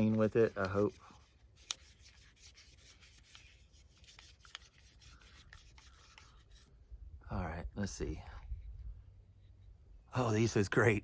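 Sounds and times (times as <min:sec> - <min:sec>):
cloth rubbing on lenses: 0:00.0 - 0:06.8.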